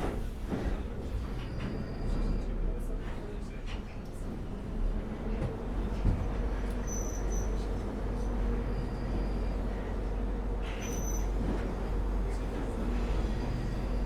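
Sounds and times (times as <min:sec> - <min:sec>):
train rumbling: 0:07.6 - 0:14.0.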